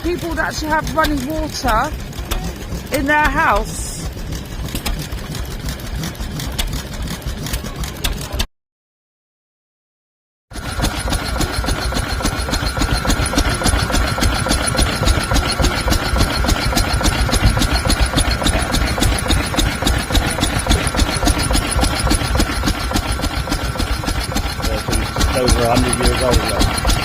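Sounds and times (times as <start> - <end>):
constant high tone: 0.0 - 4.1, 11.0 - 27.0
steam engine beating: 0.0 - 8.4, 10.6 - 27.0.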